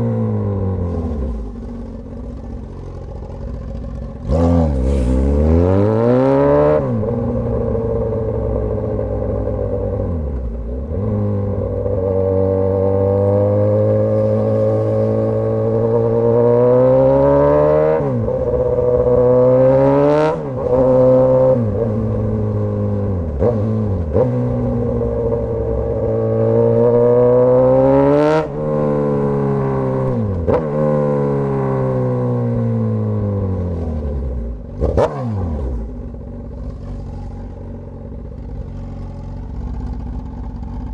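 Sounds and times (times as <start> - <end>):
motorcycle engine accelerating: 0.0 - 40.9
sharp engine revs: 4.2 - 7.4, 34.8 - 36.0.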